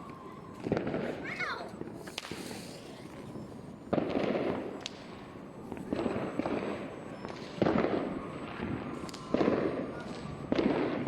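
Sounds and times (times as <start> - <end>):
fireworks bangs: 0.0 - 11.0
fireworks crackling: 0.0 - 11.0.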